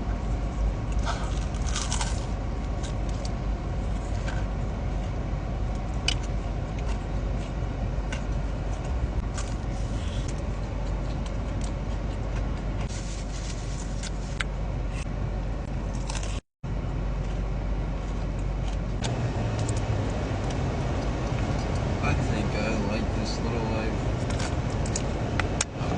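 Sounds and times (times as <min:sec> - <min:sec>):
steady low rumble: 0:00.0 - 0:25.9
chewing clicks and crunches: 0:00.9 - 0:12.9, 0:24.2 - 0:25.7.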